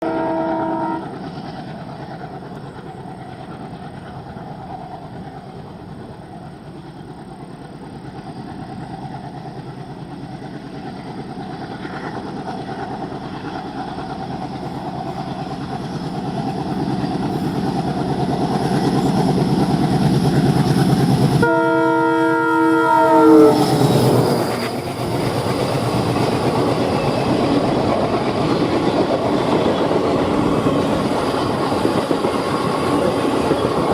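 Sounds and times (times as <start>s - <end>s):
locomotive multi-tone horn: 0.0s - 1.2s, 21.4s - 24.7s
diesel locomotive engine chugging: 0.0s - 33.9s
train rolling rumble: 0.0s - 33.9s.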